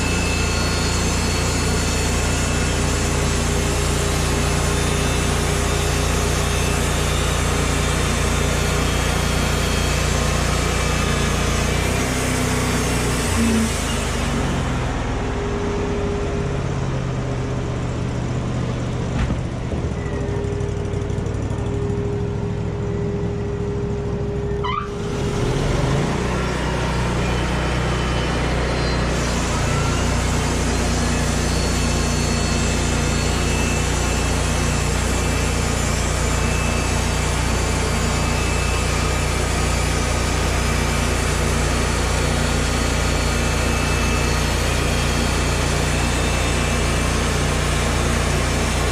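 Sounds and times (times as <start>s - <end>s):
machinery engine running: 0.0s - 48.9s.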